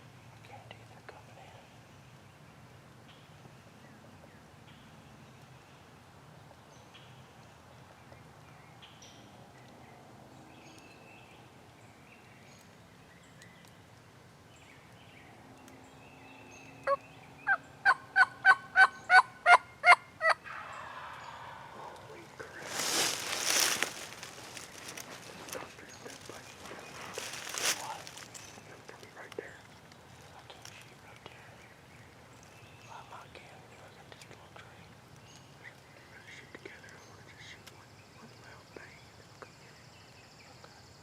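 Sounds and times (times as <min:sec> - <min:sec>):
faint songbird chirps: 0:00.2 - 0:41.0
turkey yelps: 0:16.9 - 0:22.0.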